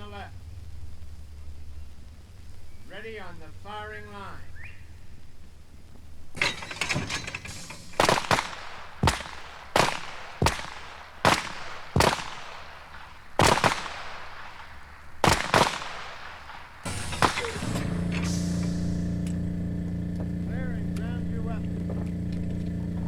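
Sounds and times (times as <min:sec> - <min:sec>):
pistol shots with echo: 0:06.4 - 0:19.4.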